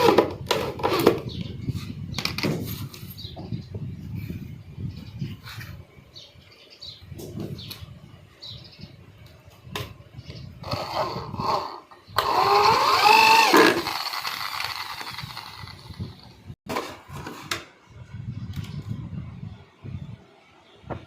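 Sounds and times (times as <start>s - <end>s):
electric power tool running: 10.6s - 16.3s.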